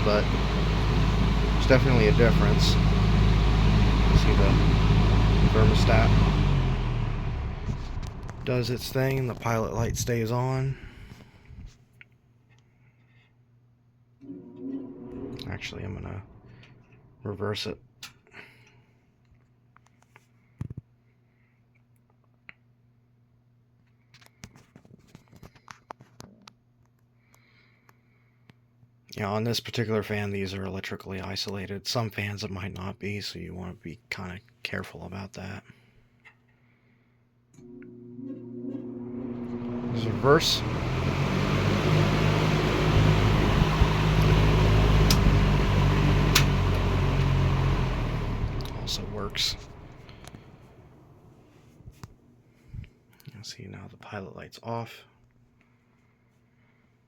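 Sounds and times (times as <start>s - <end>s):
low electrical hum: 0.0s - 11.7s, 14.2s - 19.5s, 37.5s - 56.1s.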